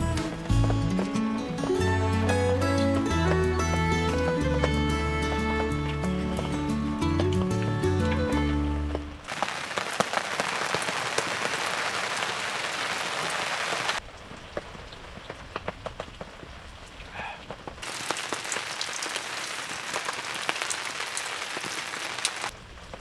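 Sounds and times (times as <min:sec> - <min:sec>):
steady rain falling: 0:08.9 - 0:23.0.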